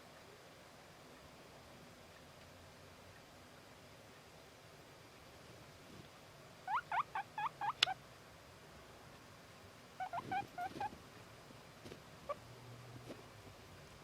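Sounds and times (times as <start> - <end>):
guinea pig whistling: 10.0 - 10.9.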